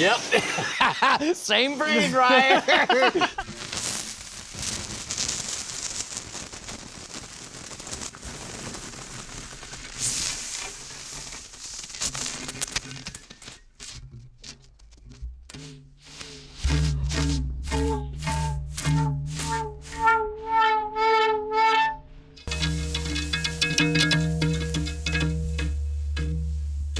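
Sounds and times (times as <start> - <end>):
metal singing low tones: 16.6 - 26.9.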